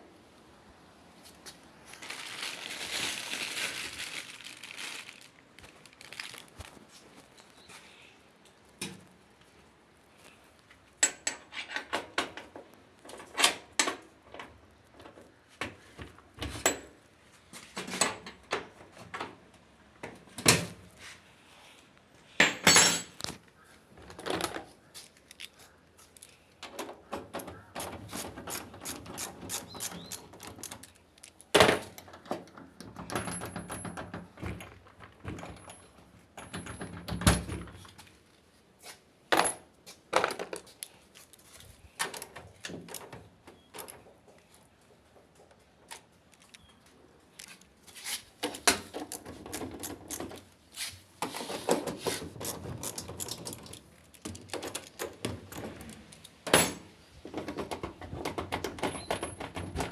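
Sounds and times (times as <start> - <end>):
tools clicking and clinking: 25.1 - 32.2, 48.5 - 50.5, 52.4 - 56.9.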